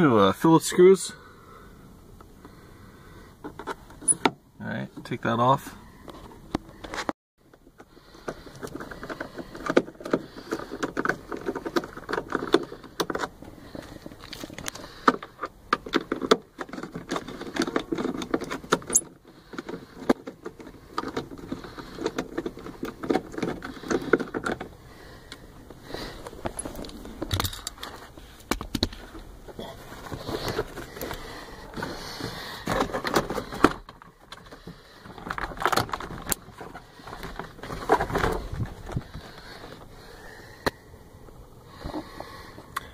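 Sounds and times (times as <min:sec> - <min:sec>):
trim panel clicks and rattles: 0:14.2 - 0:25.4.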